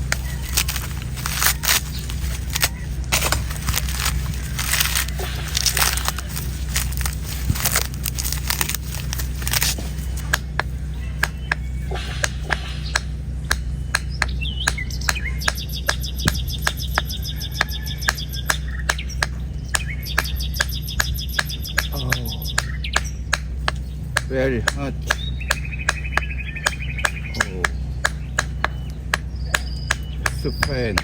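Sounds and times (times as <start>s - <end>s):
knife scraping coconut husk: 0.0s - 14.3s
sharp evenly spaced clicks: 0.0s - 31.0s
steady low hum: 0.0s - 31.0s
bird chirping high notes: 8.6s - 31.0s.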